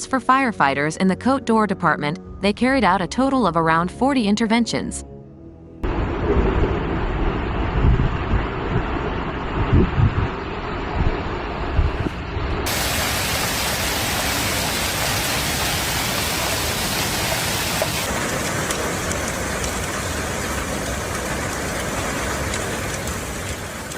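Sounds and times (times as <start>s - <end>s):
heavy rain pouring: 5.9s - 9.7s, 10.3s - 23.9s.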